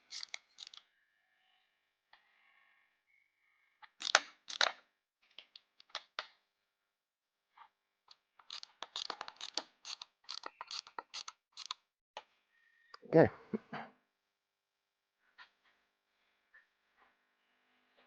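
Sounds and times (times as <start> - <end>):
hand ratchet wrench clicking: 0.0 - 0.8, 4.0 - 4.7, 8.4 - 11.8.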